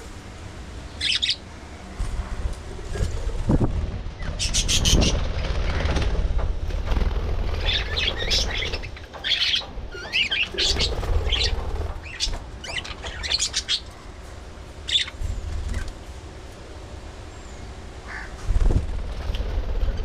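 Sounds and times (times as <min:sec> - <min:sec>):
budgerigars chirping: 0:01.0 - 0:01.4, 0:04.4 - 0:05.2, 0:07.6 - 0:13.9, 0:14.9 - 0:15.9.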